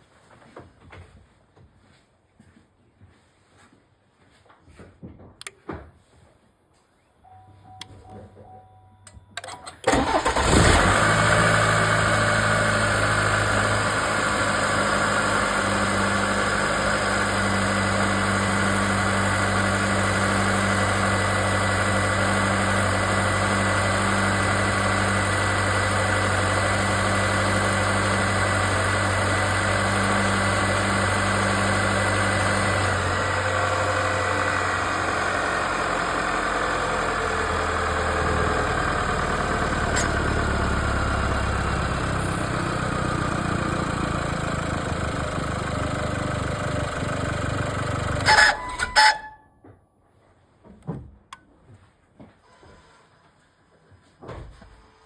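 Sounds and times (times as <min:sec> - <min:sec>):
car engine starting and idling: 0:07.3 - 0:49.4
wastegate actuator tone: 0:48.2 - 0:49.5.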